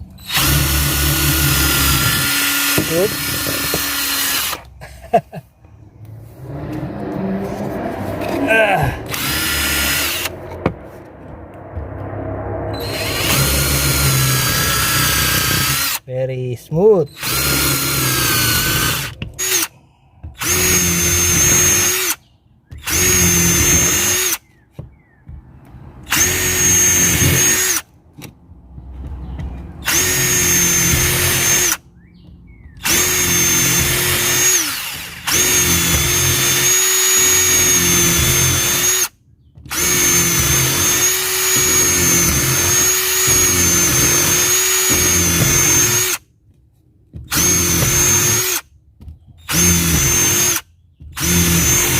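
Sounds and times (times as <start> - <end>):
impact driver motor whine: 0.2 - 4.7, 6.7 - 10.8, 12.7 - 16.0, 17.1 - 19.7, 20.4 - 24.5, 26.1 - 27.9, 29.8 - 31.8, 32.8 - 39.1, 39.7 - 46.2, 47.3 - 48.6, 49.4 - 51.9.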